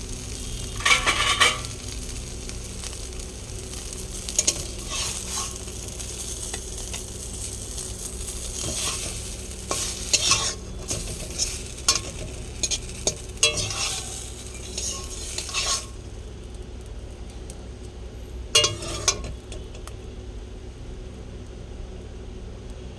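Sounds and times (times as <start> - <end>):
pancake sizzling in a pan: 0.0 - 20.1
spatula scraping a pan: 0.7 - 1.7, 4.3 - 7.5, 8.3 - 16.0, 18.6 - 19.4.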